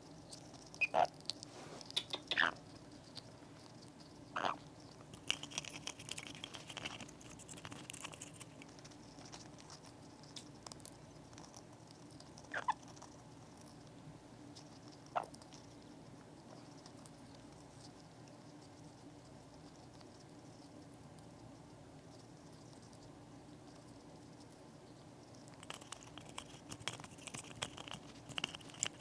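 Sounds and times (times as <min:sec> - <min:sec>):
parrot cracking nut shell: 0:00.3 - 0:13.8, 0:25.4 - 0:29.0
parrot squeaks: 0:00.8 - 0:01.1, 0:02.0 - 0:02.6, 0:04.4 - 0:04.6, 0:12.5 - 0:12.8.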